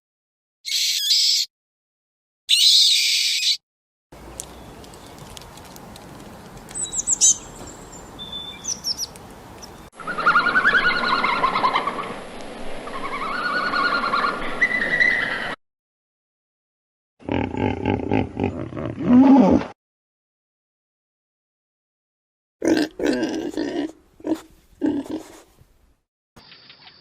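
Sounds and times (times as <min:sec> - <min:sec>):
birds chirping: 0:04.2 - 0:12.0
bird warbling calls: 0:06.7 - 0:12.1.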